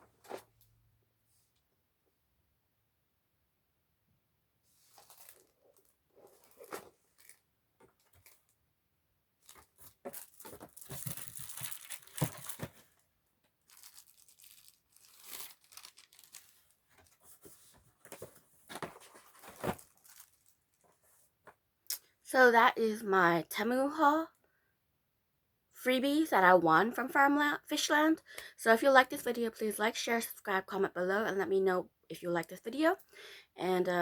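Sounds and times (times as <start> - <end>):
packaging crinkling and rustling: 4.8 - 8.6, 9.4 - 21.0.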